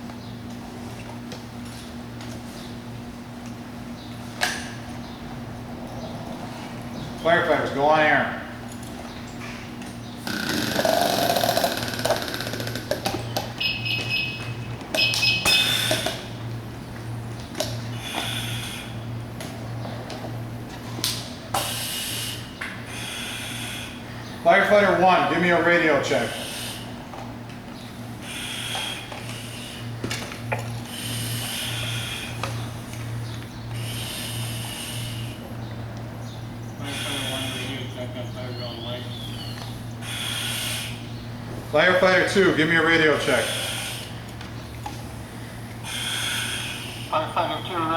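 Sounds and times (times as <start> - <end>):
steady low hum: 0.0 - 47.9
hissing breaths through regulators: 9.4 - 14.2, 15.2 - 16.4, 17.0 - 19.4, 21.5 - 24.4, 26.0 - 27.1, 27.8 - 35.7, 36.7 - 47.8
loud air hissing: 21.6 - 24.0, 26.2 - 27.0, 33.8 - 35.4, 36.8 - 38.0, 40.0 - 41.8, 43.2 - 44.2, 45.8 - 47.2.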